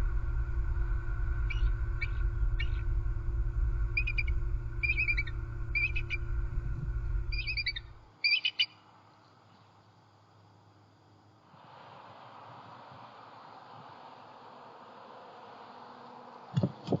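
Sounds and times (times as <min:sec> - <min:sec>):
low rumble: 0:00.0 - 0:08.2
eagles chattering calls: 0:01.4 - 0:02.9, 0:04.0 - 0:06.4, 0:07.3 - 0:08.8.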